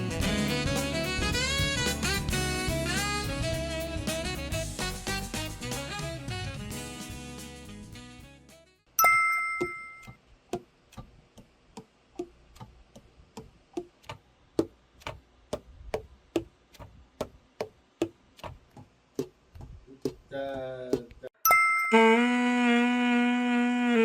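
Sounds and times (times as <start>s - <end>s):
saxophone note: 0.0s - 8.2s, 21.9s - 24.0s.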